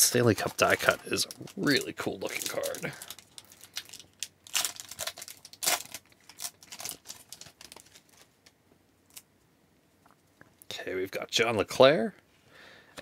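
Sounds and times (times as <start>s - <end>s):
wrapper crinkling and tearing: 0.2s - 8.4s.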